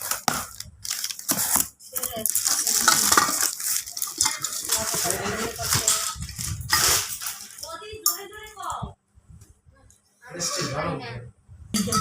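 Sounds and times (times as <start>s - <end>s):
hard objects clattering: 0.0s - 8.6s.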